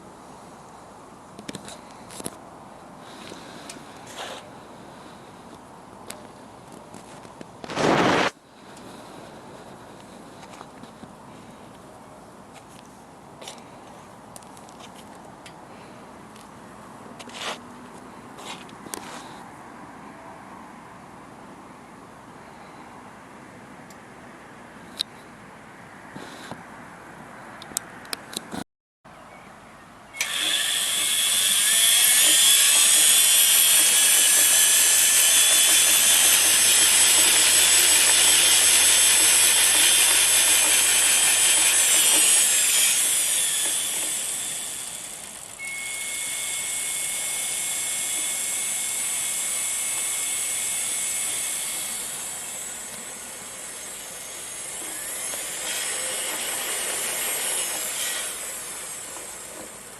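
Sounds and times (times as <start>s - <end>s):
electric motor whining: 30.2s - 59.7s.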